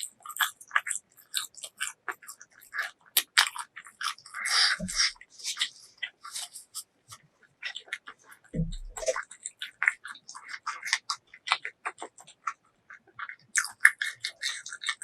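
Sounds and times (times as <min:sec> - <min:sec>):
chewing and biting: 0:00.0 - 0:15.0
low thump: 0:08.6 - 0:09.0.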